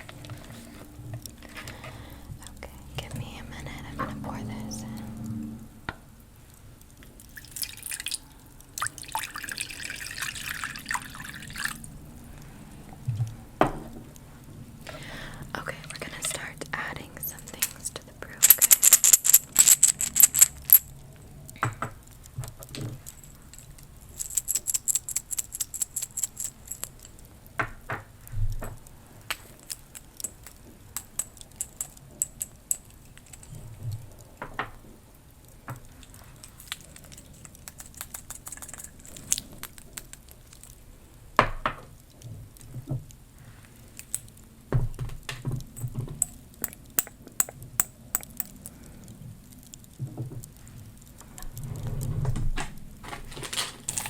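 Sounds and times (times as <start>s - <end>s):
utensils clinking and tapping: 18.4s - 20.9s, 22.8s - 27.2s, 29.7s - 33.6s, 36.5s - 39.5s, 45.8s - 48.7s, 53.3s - 54.0s.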